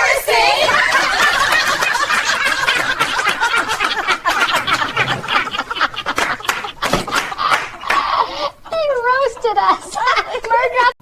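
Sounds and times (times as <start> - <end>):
group of people laughing: 0.1 - 11.0.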